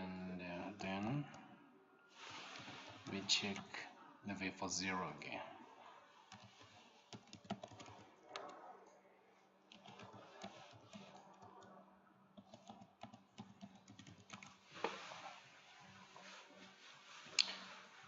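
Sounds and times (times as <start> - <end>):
keyboard typing: 0.6 - 1.4, 2.2 - 3.8, 6.3 - 8.7, 9.7 - 11.8, 12.4 - 14.6.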